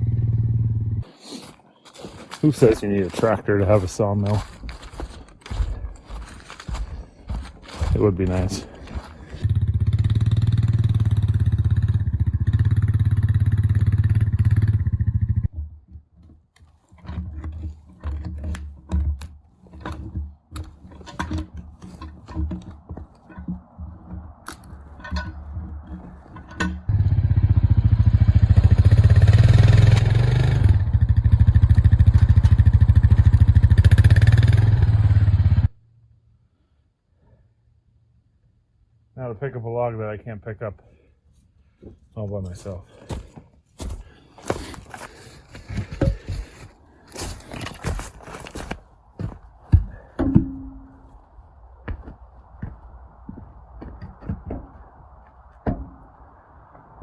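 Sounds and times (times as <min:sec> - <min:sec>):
engine running: 0:00.0 - 0:01.1, 0:07.4 - 0:15.5, 0:26.5 - 0:35.8
knocks and clatter: 0:15.4 - 0:26.9, 0:47.2 - 0:51.2, 0:53.8 - 0:56.1.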